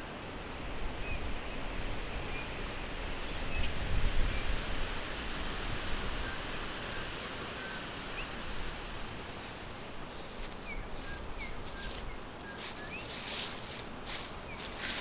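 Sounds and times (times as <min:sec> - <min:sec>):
forest ambience hiss: 0:00.1 - 0:15.0
leaves rustling: 0:07.2 - 0:15.0
songbirds chirping: 0:07.5 - 0:15.0.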